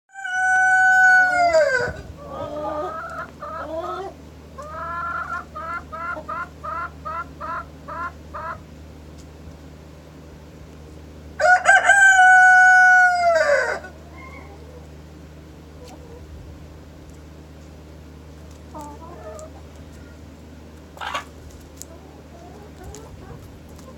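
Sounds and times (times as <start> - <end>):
rooster crowing: 0.1 - 2.0, 11.4 - 14.5
clucking calls: 1.3 - 8.7, 18.7 - 20.2, 20.9 - 23.9.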